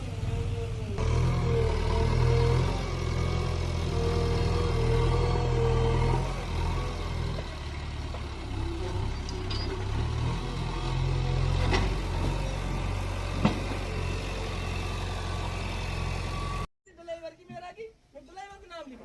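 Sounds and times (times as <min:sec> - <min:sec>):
heavy diesel engine running: 0:00.0 - 0:16.7.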